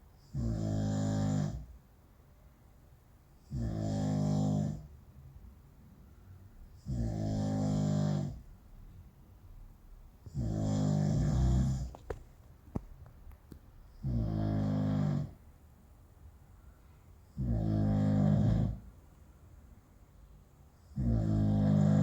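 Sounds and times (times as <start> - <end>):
person snoring: 6.9 - 8.4, 10.3 - 12.0, 14.0 - 15.4, 17.4 - 18.8, 21.0 - 22.0.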